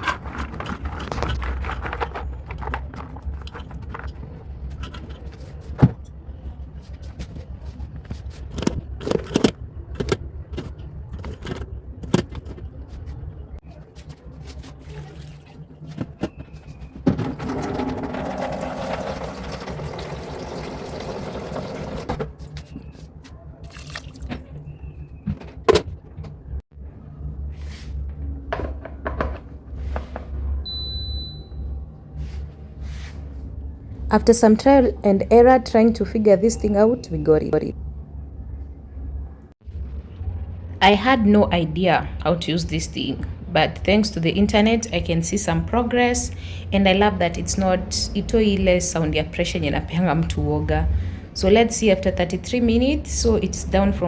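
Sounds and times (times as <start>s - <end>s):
low steady hum: 0.0s - 54.0s
water pouring into pot: 18.1s - 22.1s.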